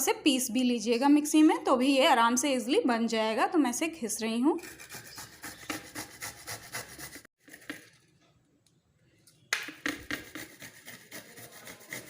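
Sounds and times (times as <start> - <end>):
ginger grating on grater: 4.6 - 7.8, 10.0 - 12.0.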